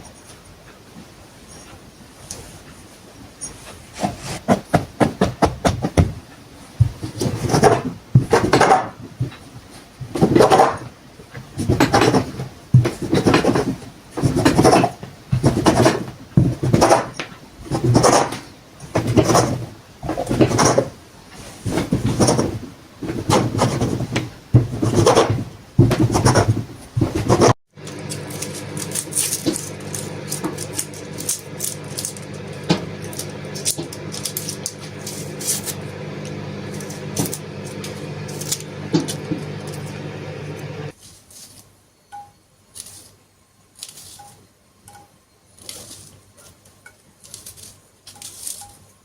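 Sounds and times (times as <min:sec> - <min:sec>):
hand saw cutting wood: 0:04.0 - 0:06.1, 0:07.0 - 0:09.0, 0:10.2 - 0:10.9, 0:11.5 - 0:20.9, 0:21.6 - 0:33.9.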